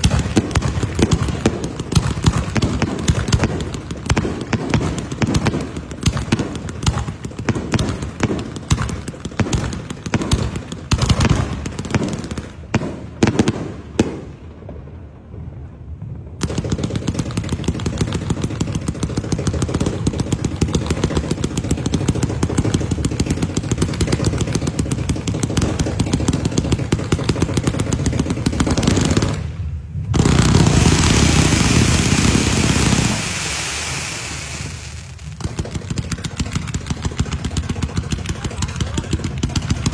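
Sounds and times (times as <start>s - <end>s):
firecrackers crackling: 0.0s - 39.9s
loud hissing rush: 28.9s - 35.4s.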